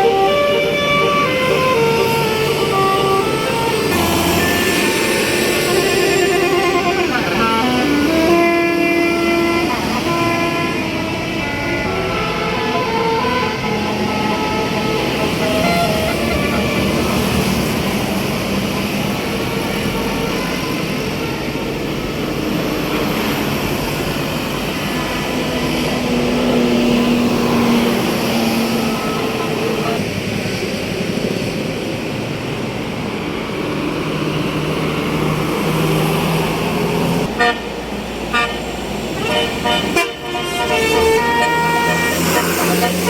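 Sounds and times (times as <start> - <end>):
multi-tone melodic horns: 0.0 - 22.1, 24.7 - 30.0, 37.2 - 43.0
bus engines running: 0.0 - 43.0.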